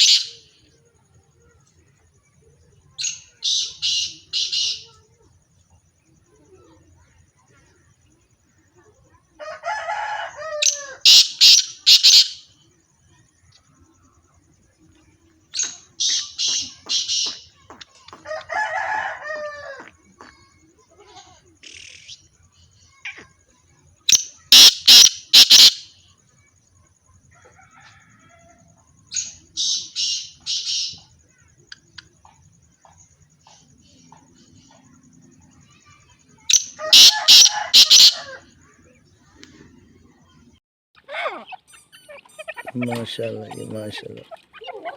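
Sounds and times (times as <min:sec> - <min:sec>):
low drawn-out bird call: 0:00.0 - 0:00.5, 0:10.5 - 0:12.6, 0:24.1 - 0:26.1, 0:35.8 - 0:39.8
bird harsh quick calling phrase: 0:11.0 - 0:12.4, 0:24.5 - 0:25.8, 0:36.5 - 0:38.4.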